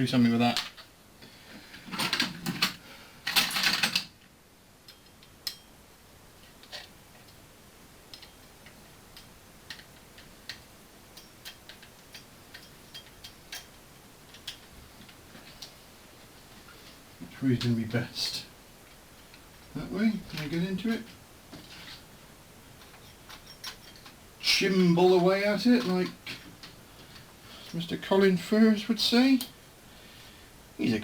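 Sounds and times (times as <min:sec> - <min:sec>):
metal tools rattling: 0:11.1 - 0:14.7, 0:22.8 - 0:24.2.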